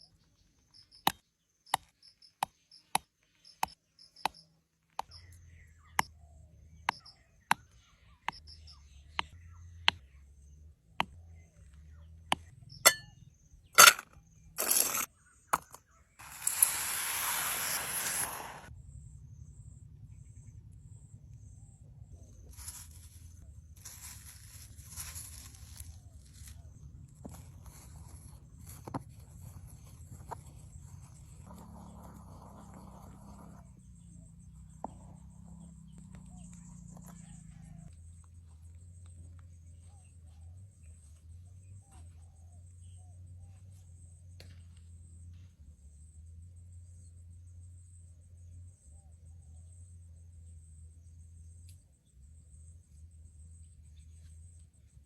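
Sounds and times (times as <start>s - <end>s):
rush of hissing noise: 16.2s - 18.7s.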